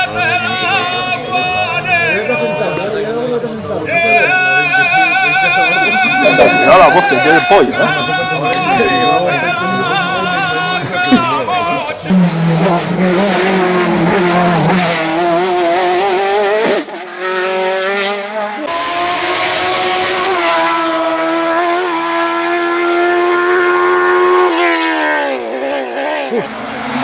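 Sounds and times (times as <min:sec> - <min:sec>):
race car engine revving: 0:00.0 - 0:27.0.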